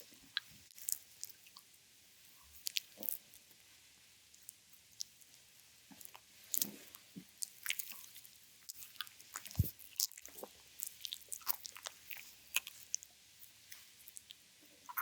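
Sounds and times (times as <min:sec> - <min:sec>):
stomach gurgle: 0:05.0 - 0:13.1, 0:13.7 - 0:15.0.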